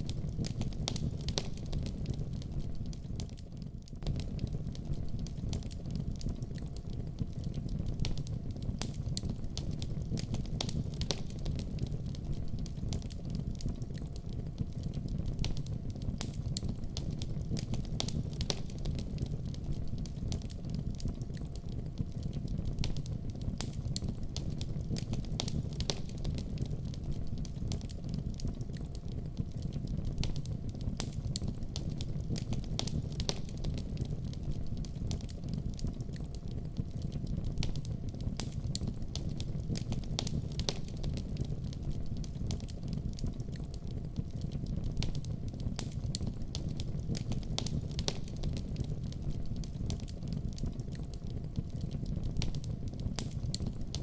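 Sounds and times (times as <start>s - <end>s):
fire crackling and popping: 0.0s - 54.0s.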